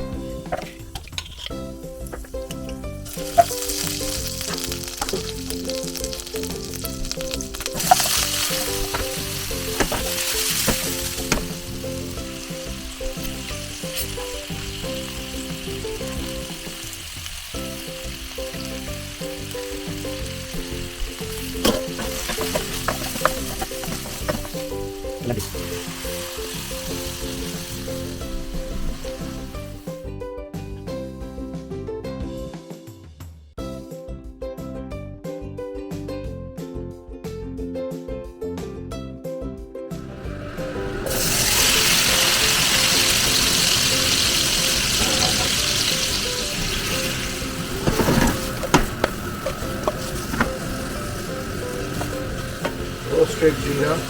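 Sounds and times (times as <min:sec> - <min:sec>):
background music: 0:00.0 - 0:54.0
food sizzling in a pan: 0:00.1 - 0:30.1, 0:40.1 - 0:54.0.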